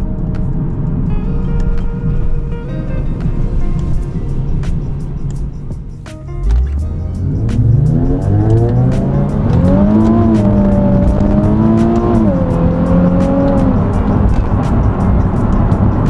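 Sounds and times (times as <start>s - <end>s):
car engine accelerating: 6.3s - 16.0s.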